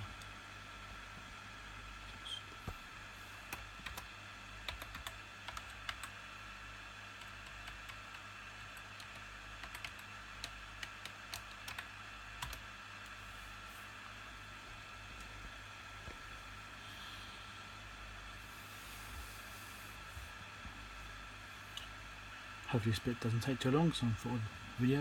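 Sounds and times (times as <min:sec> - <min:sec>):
low background hum: 0:00.0 - 0:25.0
laptop keyboard typing: 0:03.4 - 0:06.2, 0:07.1 - 0:13.2.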